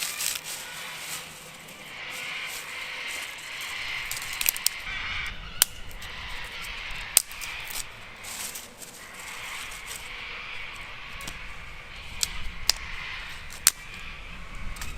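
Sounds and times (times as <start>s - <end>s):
twigs snapping: 0.0s - 4.9s, 7.1s - 10.1s, 12.1s - 12.9s, 13.5s - 13.9s
leaves and twigs rustling: 0.0s - 14.9s.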